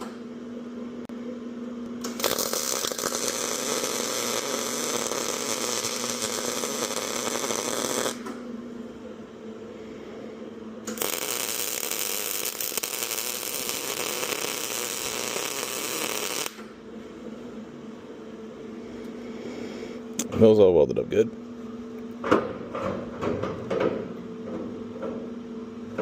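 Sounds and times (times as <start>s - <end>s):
welding arc crackling: 2.0s - 8.3s, 10.9s - 16.7s.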